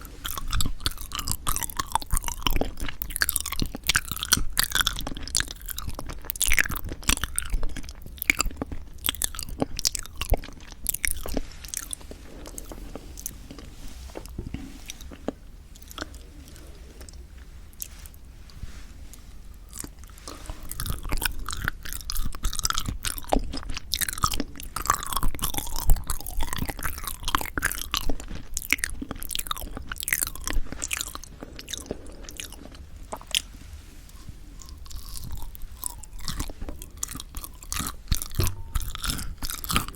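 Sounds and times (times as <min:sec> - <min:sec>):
sticky mouth chewing clicks: 0:00.0 - 0:12.7, 0:20.7 - 0:33.4, 0:34.7 - 0:39.9.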